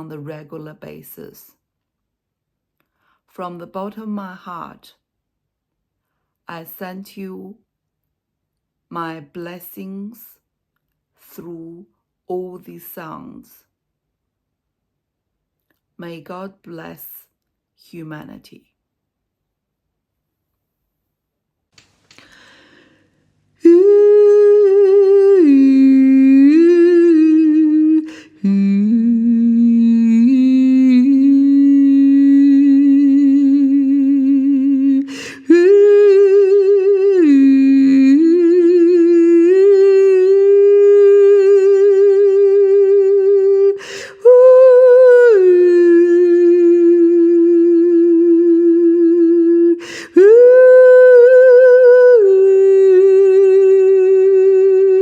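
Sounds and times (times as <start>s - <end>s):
woman singing wordlessly: 0.0s - 1.6s, 3.3s - 5.0s, 6.5s - 7.6s, 8.9s - 10.4s, 11.2s - 13.6s, 16.0s - 18.6s, 23.6s - 55.0s
quick breath: 22.0s - 23.4s.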